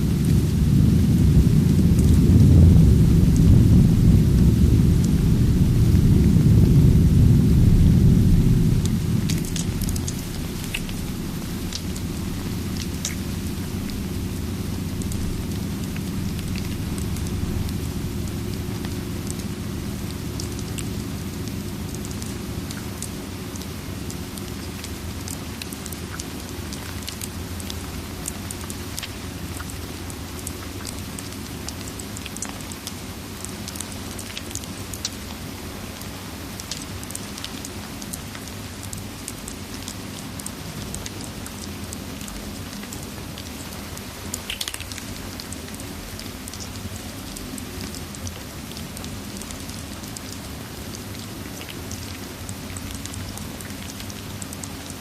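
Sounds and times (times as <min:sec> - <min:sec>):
low rumble: 0:00.0 - 0:25.1
fire crackling and popping: 0:00.0 - 0:32.9, 0:36.6 - 0:55.0
steady rainfall: 0:00.0 - 0:55.0.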